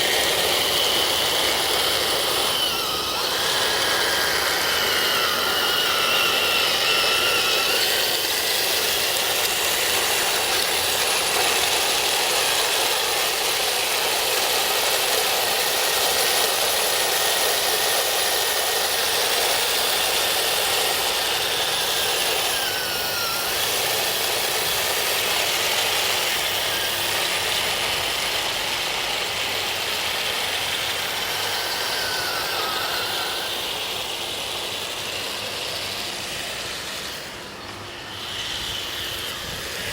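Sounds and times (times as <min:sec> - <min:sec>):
electric motors whining: 0:00.0 - 0:39.9.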